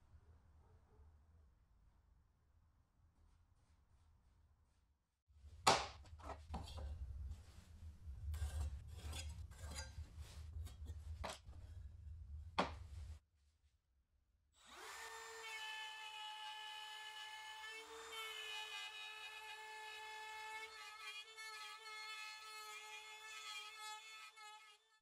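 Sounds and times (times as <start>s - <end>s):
small power tool humming: 14.6s - 24.8s.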